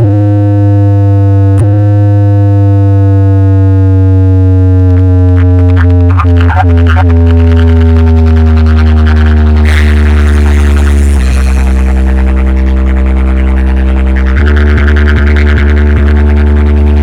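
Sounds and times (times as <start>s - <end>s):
loud electronic music: 4.8s - 17.0s.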